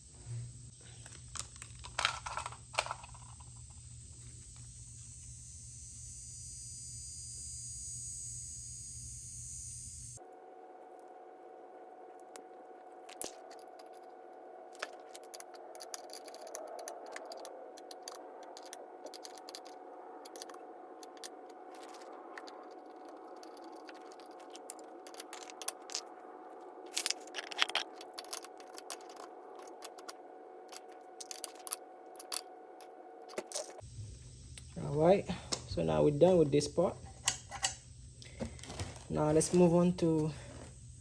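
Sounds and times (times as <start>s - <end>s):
faint steady hum: 0.0s - 41.0s
metal fittings clicking and scraping: 14.8s - 26.1s, 26.9s - 32.5s.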